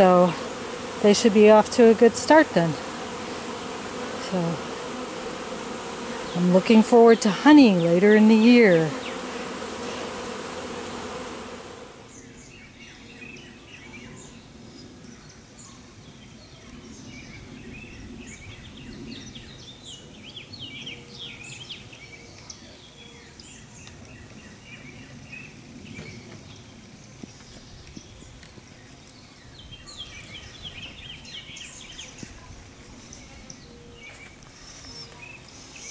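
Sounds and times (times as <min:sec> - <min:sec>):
small birds chirping: 0:00.0 - 0:11.3, 0:12.0 - 0:35.9
bees buzzing: 0:00.0 - 0:12.2.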